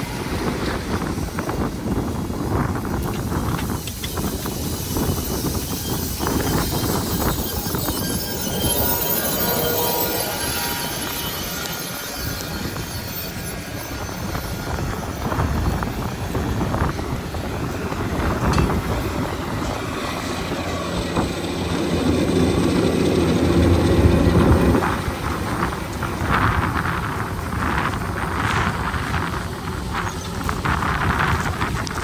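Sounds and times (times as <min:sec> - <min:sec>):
humming tone: 0:03.1 - 0:27.0
tractor diesel engine under load: 0:12.7 - 0:31.8.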